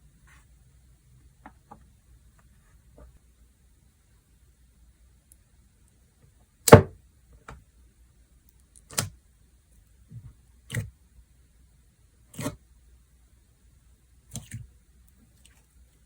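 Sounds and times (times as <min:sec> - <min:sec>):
sharp knocks on hard surface: 0:06.7 - 0:07.0.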